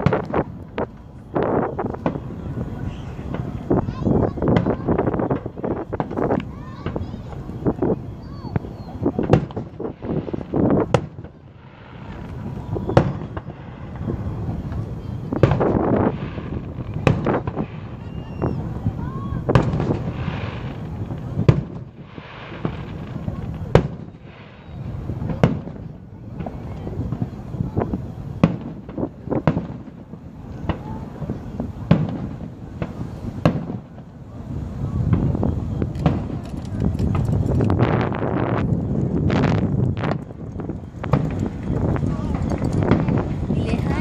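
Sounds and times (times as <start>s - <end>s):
fireworks bangs: 0.0s - 44.0s
steady low rumble: 18.6s - 44.0s.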